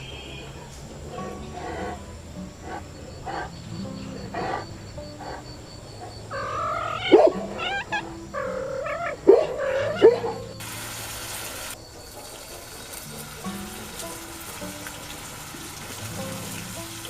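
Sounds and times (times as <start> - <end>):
animal cries: 1.2 - 10.6
animal hiss: 10.6 - 17.0.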